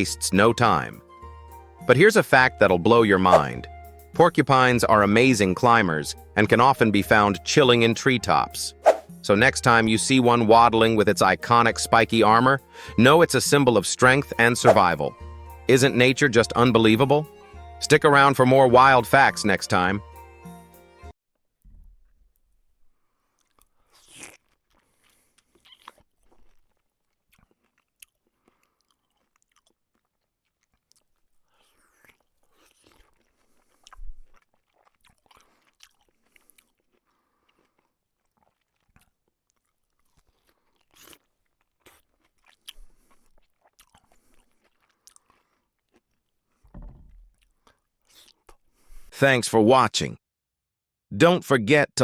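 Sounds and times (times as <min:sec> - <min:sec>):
porcupine crunching food: 0:23.2 - 0:48.6.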